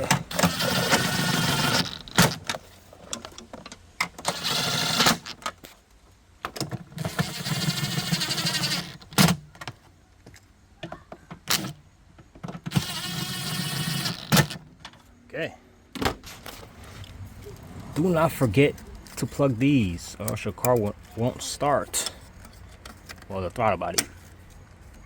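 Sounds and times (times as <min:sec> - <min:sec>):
power tool motor whirring: 0:00.0 - 0:02.5, 0:04.2 - 0:05.4, 0:07.0 - 0:09.3, 0:11.5 - 0:11.8, 0:12.7 - 0:14.6.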